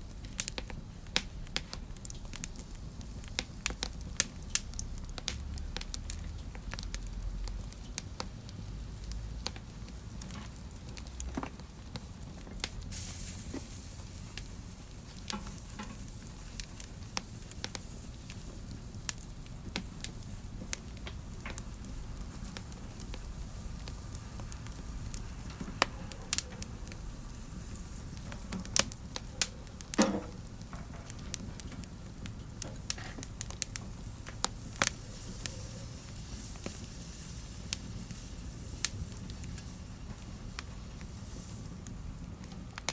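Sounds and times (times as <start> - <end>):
wood fire crackling: 0.0 - 42.9
brief hiss: 12.9 - 14.4.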